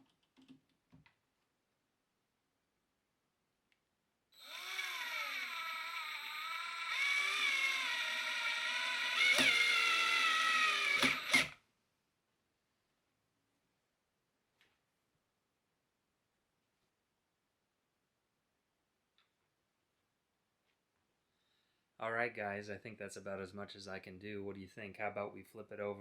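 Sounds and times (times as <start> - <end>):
cordless drill motor whine: 4.4 - 11.6
drill clutch clicks: 4.4 - 11.6.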